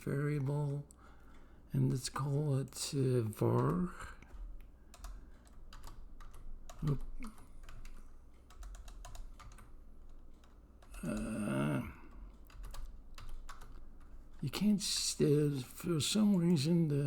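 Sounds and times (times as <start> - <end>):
computer keyboard typing: 0.4 - 17.0
murmured voice: 11.0 - 12.2.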